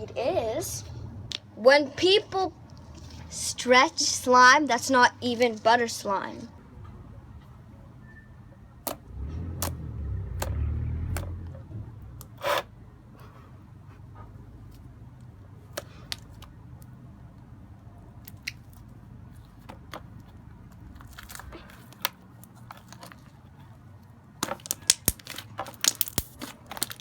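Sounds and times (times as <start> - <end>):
low rumble of handling: 0.0 - 1.4, 6.6 - 15.4
slime clicking and popping: 24.4 - 27.0.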